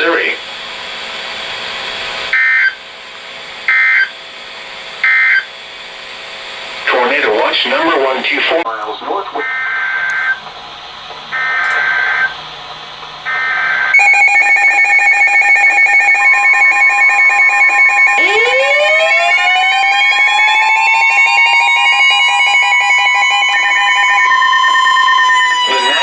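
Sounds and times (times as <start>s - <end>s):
pulsing electronic alarm: 2.3s - 2.9s, 3.7s - 4.2s, 5.0s - 5.5s, 6.9s - 26.0s
warbling data bursts: 6.9s - 26.0s
siren sliding up in pitch: 13.3s - 26.0s.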